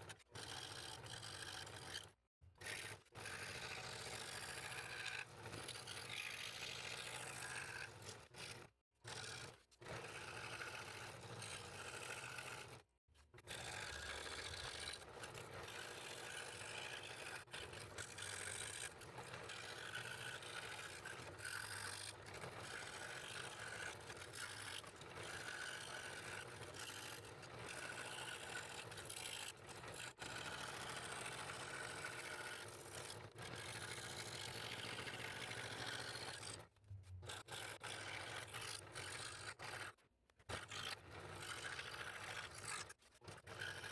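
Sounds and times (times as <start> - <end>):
scroll saw cutting wood: 13.4 - 43.9.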